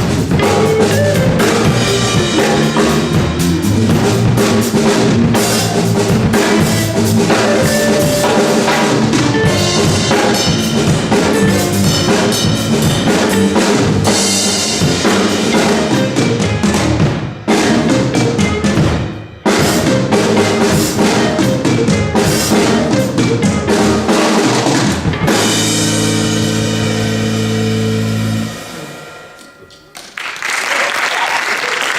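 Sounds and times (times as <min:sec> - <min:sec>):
funk band playing: 0:00.0 - 0:29.3
busy drums with rimshots: 0:00.0 - 0:29.9
held guitar chord ringing: 0:00.3 - 0:20.1, 0:25.2 - 0:30.1.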